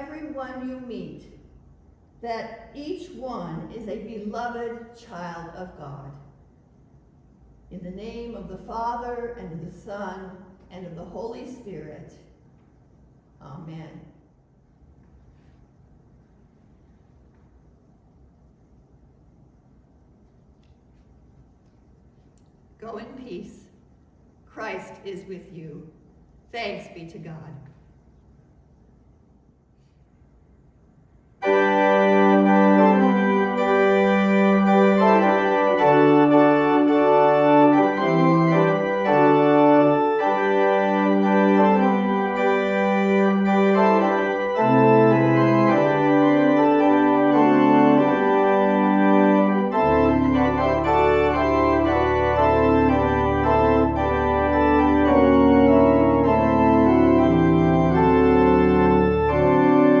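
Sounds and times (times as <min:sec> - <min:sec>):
church organ chords: 0:31.4 - 1:00.0
low organ pedal note: 0:31.4 - 1:00.0.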